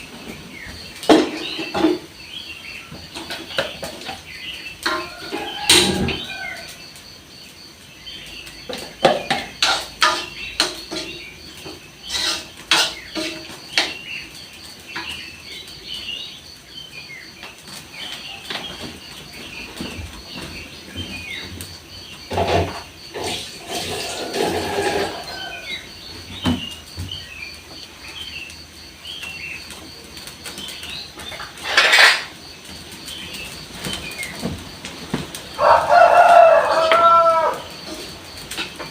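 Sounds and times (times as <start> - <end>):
small birds chirping: 0.0 - 38.9
kitchen utensils and pans clinking: 8.7 - 11.2, 12.0 - 14.0, 31.2 - 32.4.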